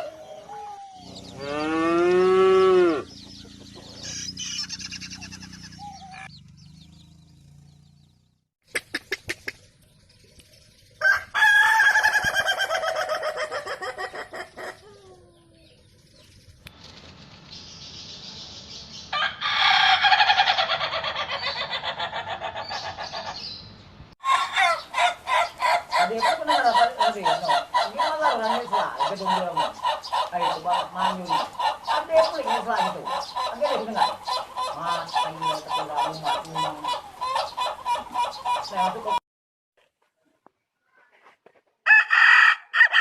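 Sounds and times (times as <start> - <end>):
rooster crowing: 11.0 - 14.0, 19.1 - 22.4, 24.2 - 28.4, 41.9 - 43.0.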